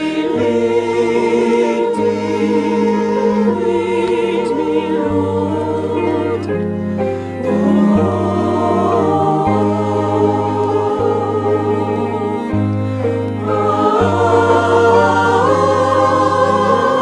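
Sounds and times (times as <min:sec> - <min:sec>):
choir singing held notes: 0:00.0 - 0:17.0
sustained low accompaniment: 0:00.0 - 0:17.0.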